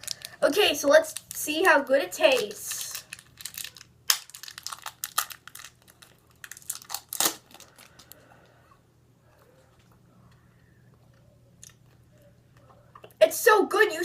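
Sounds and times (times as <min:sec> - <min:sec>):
candy wrapper crinkling: 0:00.0 - 0:08.3.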